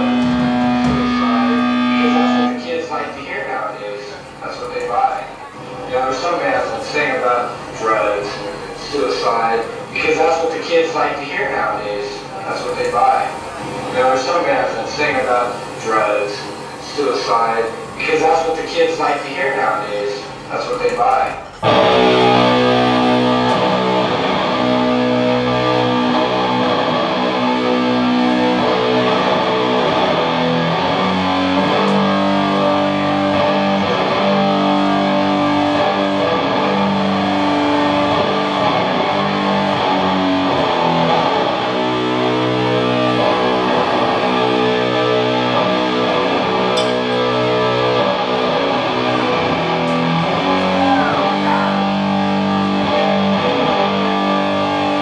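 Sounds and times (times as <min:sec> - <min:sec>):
distorted electric guitars: 0:00.0 - 0:55.0.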